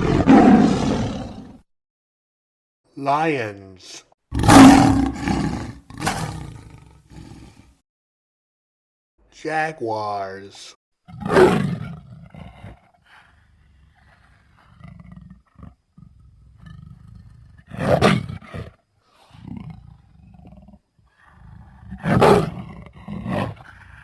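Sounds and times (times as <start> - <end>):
jaguar growling: 0.0 - 1.6, 4.3 - 7.8, 11.1 - 24.0
jaguar roaring: 0.0 - 1.6, 4.3 - 7.8, 11.1 - 18.8, 19.4 - 24.0.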